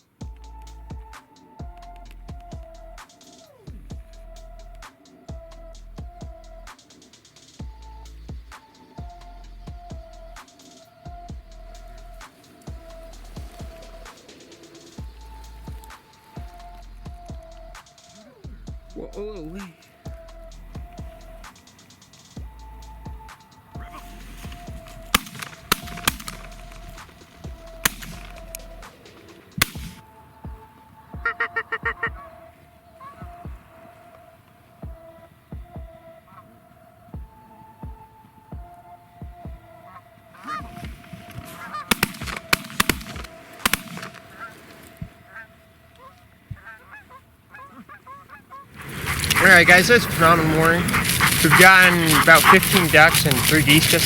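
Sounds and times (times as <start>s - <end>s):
background music: 0.0s - 47.1s, 48.4s - 54.0s
geese honking: 0.0s - 54.0s
shotgun blasts: 25.1s - 26.5s, 41.8s - 44.5s
sharp loud clicks: 25.1s - 30.0s, 41.9s - 44.3s.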